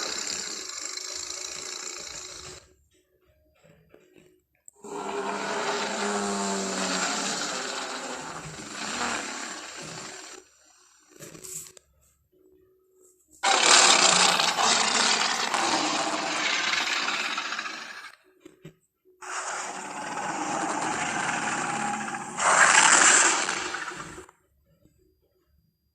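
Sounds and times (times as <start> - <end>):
monster roars: 4.8 - 10.4, 13.4 - 18.1, 19.2 - 24.2.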